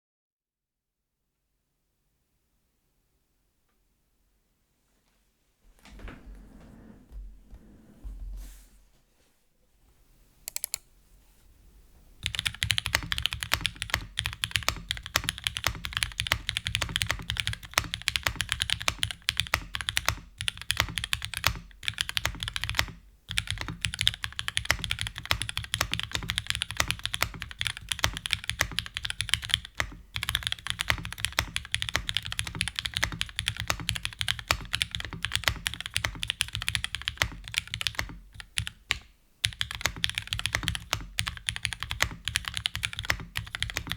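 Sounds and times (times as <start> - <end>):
mechanical keyboard typing: 10.5 - 10.8, 12.2 - 43.9.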